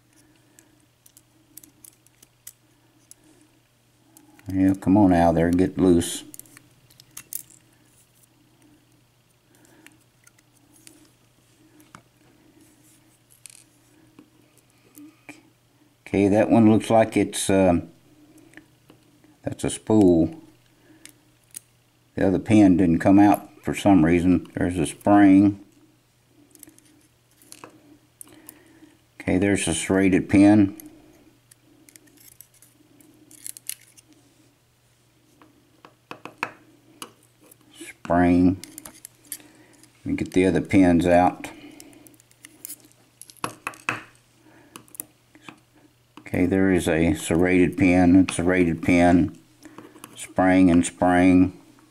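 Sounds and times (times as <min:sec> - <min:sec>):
small metal clicks and scrapes: 0:00.1 - 0:03.2, 0:06.2 - 0:08.3, 0:31.5 - 0:34.2, 0:38.6 - 0:40.4.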